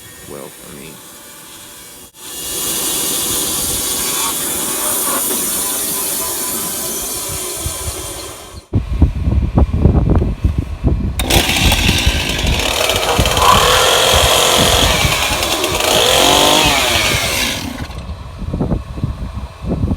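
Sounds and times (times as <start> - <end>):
loud steady hiss: 0.0 - 8.7.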